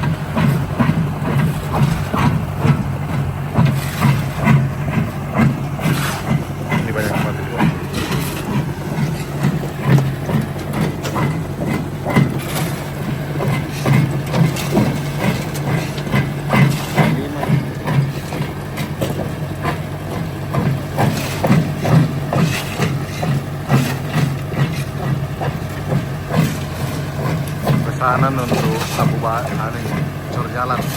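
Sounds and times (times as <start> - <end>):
heavy engine droning: 0.0 - 30.9.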